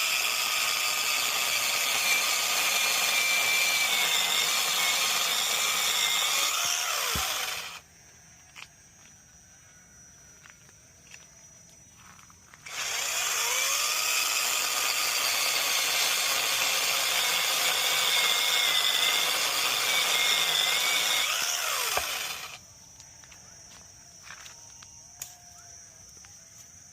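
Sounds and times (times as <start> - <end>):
power tool whining: 0.0 - 7.8, 12.6 - 22.6.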